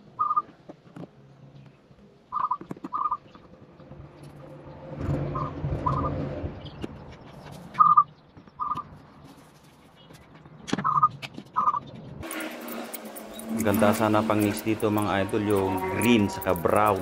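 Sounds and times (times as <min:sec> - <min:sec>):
low rumbling noise: 0:03.4 - 0:07.4.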